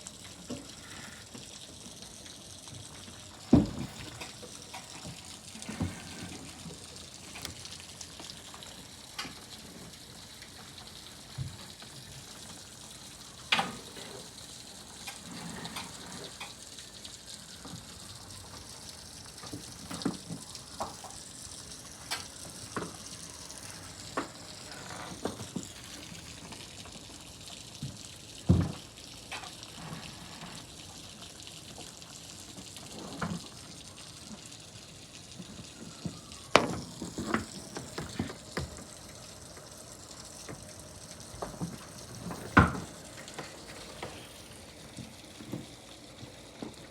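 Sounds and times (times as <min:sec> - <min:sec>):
raindrops tapping: 0:00.0 - 0:46.9
steady rain falling: 0:00.0 - 0:46.9.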